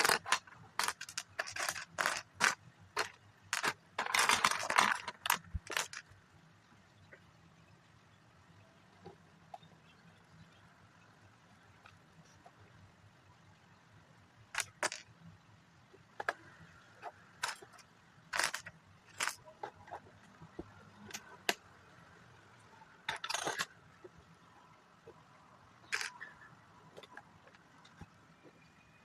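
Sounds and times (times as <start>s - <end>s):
packaging rustling: 0.0s - 6.0s
plastic pieces clicking: 0.0s - 6.2s, 14.5s - 15.1s, 16.1s - 20.0s, 23.0s - 23.8s, 25.8s - 28.1s.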